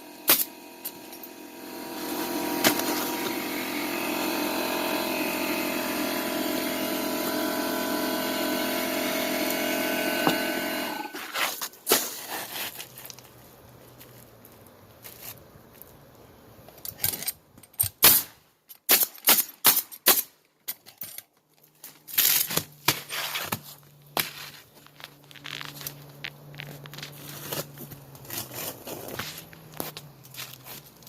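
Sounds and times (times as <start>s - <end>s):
shingles scraping: 2.4s - 3.4s, 11.1s - 13.4s, 21.9s - 31.0s.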